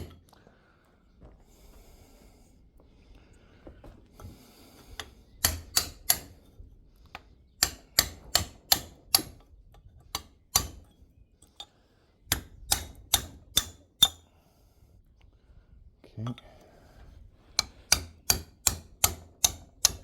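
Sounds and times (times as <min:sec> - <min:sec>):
hammer striking metal: 0:10.2 - 0:10.8, 0:17.6 - 0:20.0.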